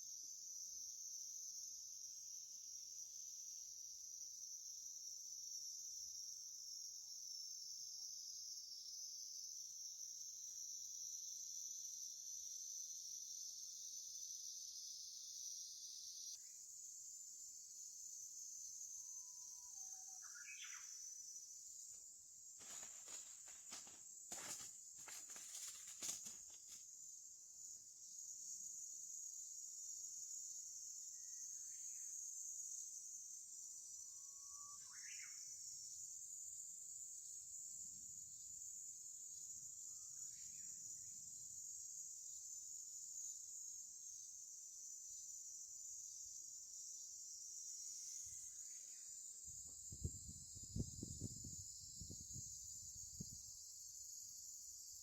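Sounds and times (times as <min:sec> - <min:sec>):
insects chirping chorus: 0:00.0 - 0:55.0.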